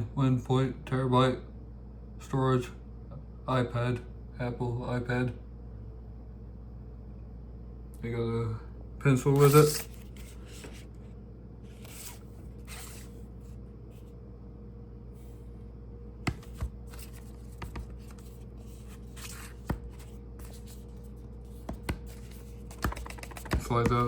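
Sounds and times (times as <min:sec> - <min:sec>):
steady low hum: 0:00.0 - 0:24.0
box rubbing: 0:16.3 - 0:24.0.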